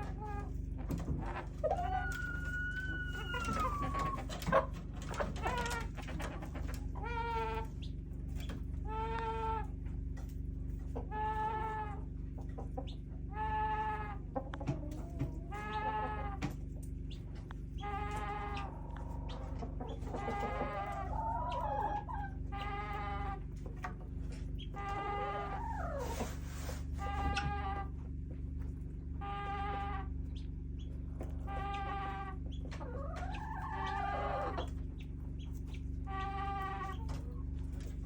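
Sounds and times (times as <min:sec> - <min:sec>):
chicken calling: 0:00.0 - 0:09.9, 0:10.7 - 0:28.0, 0:29.0 - 0:38.0
steady low hum: 0:00.0 - 0:38.0
sliding chirpy calls: 0:01.2 - 0:08.0.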